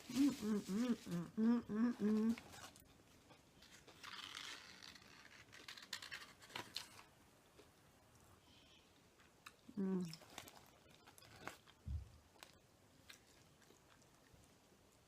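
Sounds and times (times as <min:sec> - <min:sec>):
short hummed voice: 0:00.1 - 0:02.4
crunchy chewing: 0:12.4 - 0:14.3.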